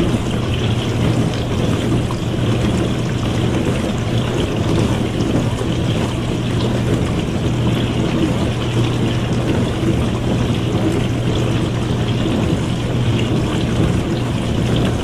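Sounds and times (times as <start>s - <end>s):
dishwasher motor hum: 0.0s - 15.0s.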